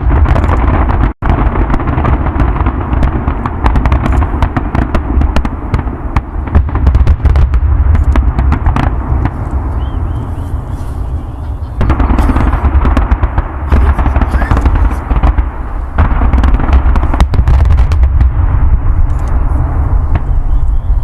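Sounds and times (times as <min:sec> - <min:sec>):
loud firework bang: 0:00.0 - 0:10.6, 0:11.7 - 0:21.0
fireworks bangs and crackling: 0:00.0 - 0:21.0
low rumble: 0:07.2 - 0:21.0.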